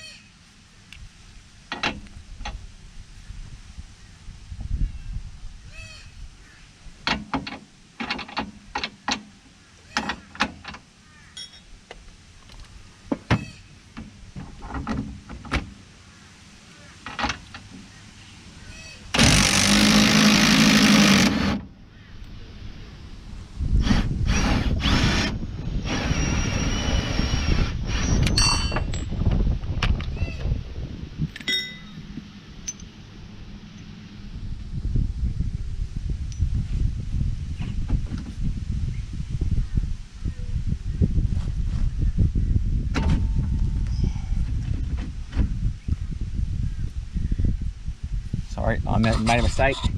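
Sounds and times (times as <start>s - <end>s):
metal tools clinking: 11.4s - 11.7s, 31.4s - 32.0s, 32.6s - 33.0s.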